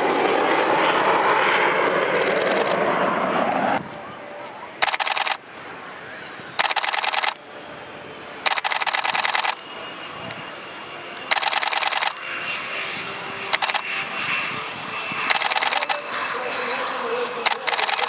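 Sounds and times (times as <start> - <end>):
faint jet engine noise: 0.0 - 18.0
camera shutter bursts: 2.2 - 2.8, 4.8 - 5.4, 6.6 - 7.4, 8.4 - 9.6, 11.3 - 12.2, 13.5 - 13.9, 15.3 - 16.0, 17.4 - 18.0.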